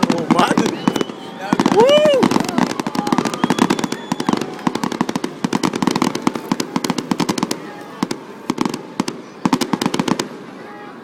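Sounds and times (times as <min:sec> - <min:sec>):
fireworks crackling: 0:00.0 - 0:10.9.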